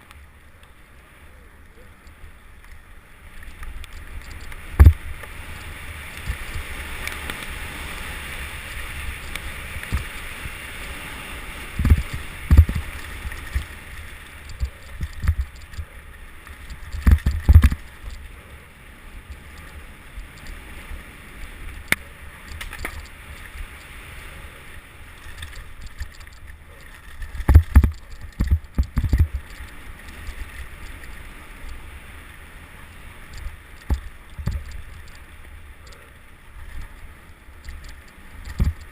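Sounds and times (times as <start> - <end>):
bike rattling: 0.0 - 38.9
wind rushing on microphone: 3.5 - 38.9.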